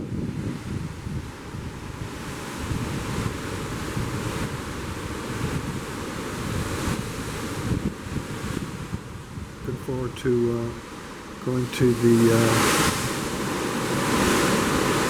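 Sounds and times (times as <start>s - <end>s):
wind buffeting microphone: 0.0s - 9.8s
ocean waves rushing: 9.8s - 15.0s.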